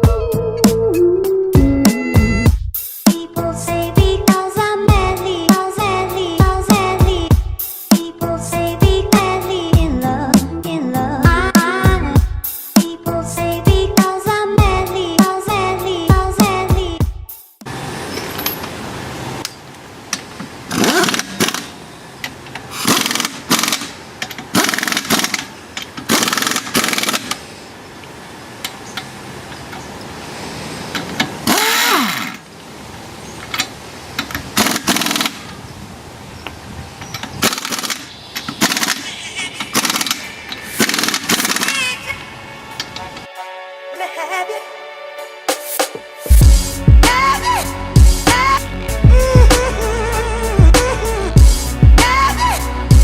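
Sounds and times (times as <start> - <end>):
impact wrench bursts: 20.7 - 27.6, 31.0 - 32.5, 34.4 - 35.6, 37.2 - 41.9.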